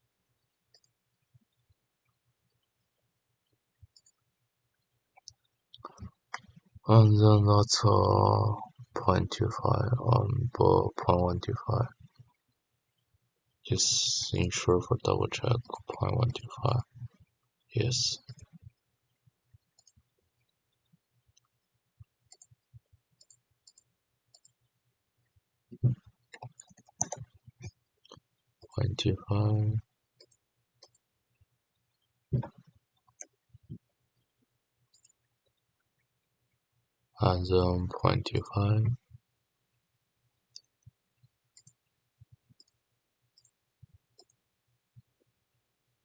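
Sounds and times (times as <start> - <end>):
computer mouse clicks: 3.9 - 4.2, 19.8 - 20.0, 22.3 - 22.6, 23.2 - 24.6, 25.7 - 28.2, 30.2 - 31.0, 34.9 - 35.2, 40.5 - 41.8, 42.6 - 42.8, 44.2 - 44.4
mouse clicks: 25.8 - 27.7, 41.6 - 41.8
soft low thumps: 32.3 - 32.6.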